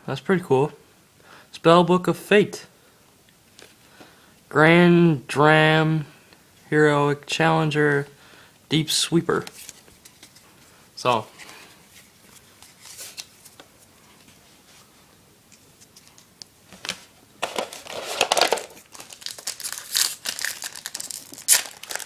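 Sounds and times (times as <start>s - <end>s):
foil wrapper crinkling and tearing: 17.4s - 22.0s.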